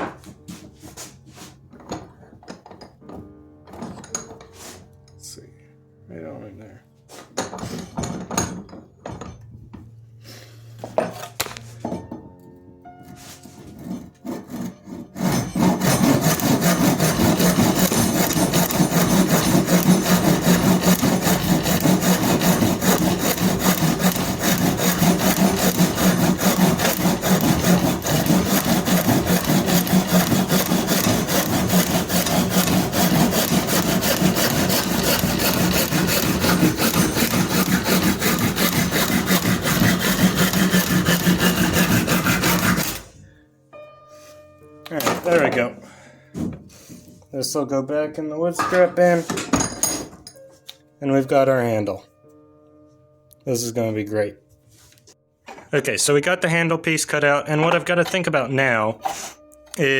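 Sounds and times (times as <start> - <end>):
saw cutting through wood: 13.5 - 43.2.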